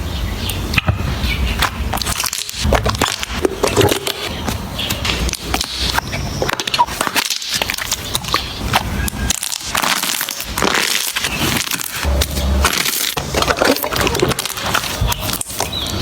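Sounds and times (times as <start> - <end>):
slime crackling and popping: 1.6 - 4.3, 4.9 - 16.0.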